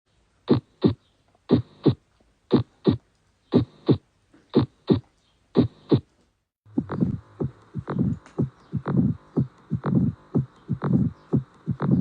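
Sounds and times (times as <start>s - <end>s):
heartbeat lub-dub: 0.5s - 6.1s, 6.7s - 12.0s
busier heart sound: 6.7s - 12.0s.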